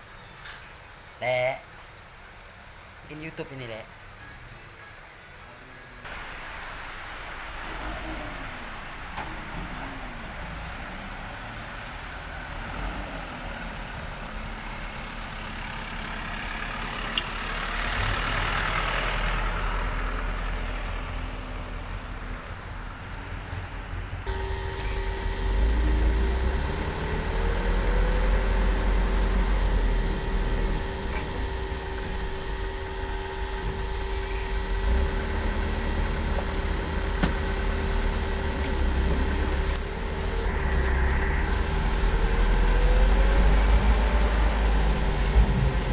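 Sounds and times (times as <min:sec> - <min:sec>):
truck engines rumbling: 0:06.0 - 0:45.9
steady humming tones: 0:24.2 - 0:45.9.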